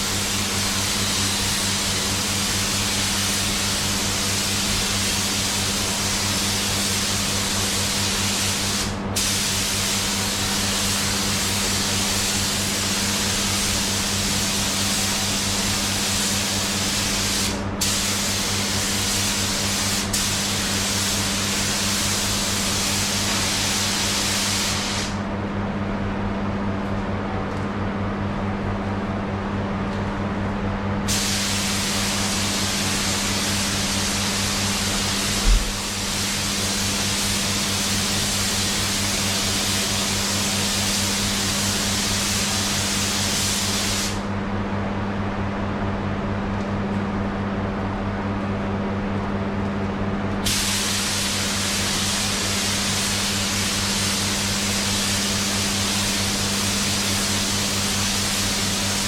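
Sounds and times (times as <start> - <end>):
spray gun hissing: 0.0 - 25.2, 31.1 - 44.3, 50.4 - 59.0
steady hum: 0.0 - 59.0.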